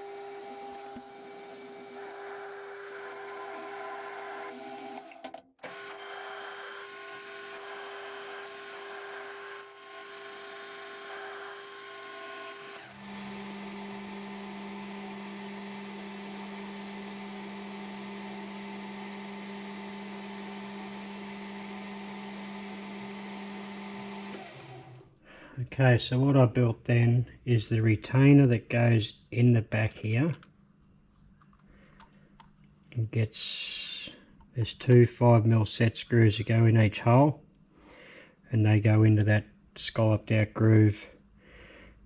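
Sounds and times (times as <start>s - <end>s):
machine tool humming: 0.0s - 25.1s.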